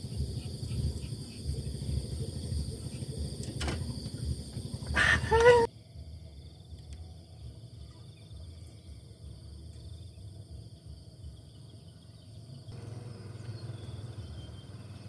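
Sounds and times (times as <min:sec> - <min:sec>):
low rumble: 0:00.0 - 0:05.0.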